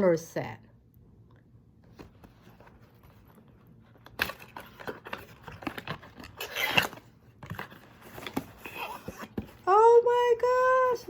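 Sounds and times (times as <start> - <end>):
packaging rustling and crinkling: 1.9 - 9.6.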